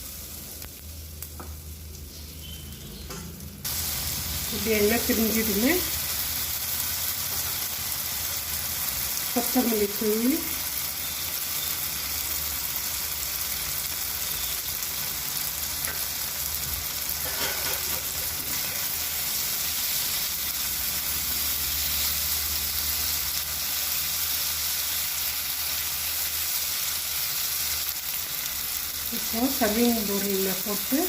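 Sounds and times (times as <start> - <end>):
vegetables sizzling in oil: 0.0 - 31.0.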